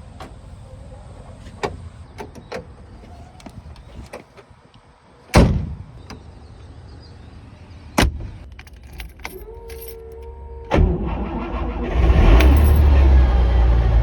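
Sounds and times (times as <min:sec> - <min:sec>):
car door thuds: 0:05.3 - 0:05.8
car engine starting: 0:09.2 - 0:14.0.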